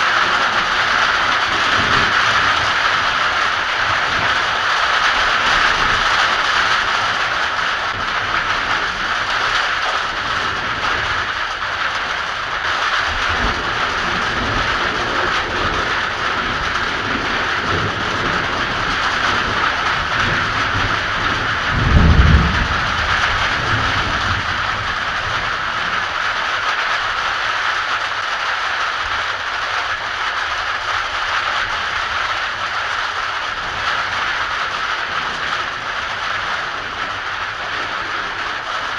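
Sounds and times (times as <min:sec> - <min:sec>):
heavy rain falling: 0:00.0 - 0:38.9
low rolls of thunder: 0:13.1 - 0:26.2.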